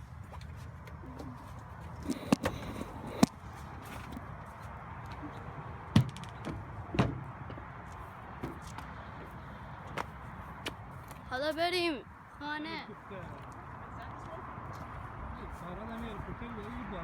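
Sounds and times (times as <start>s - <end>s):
sharp knocks and thumps: 2.1s - 3.4s, 5.9s - 7.8s.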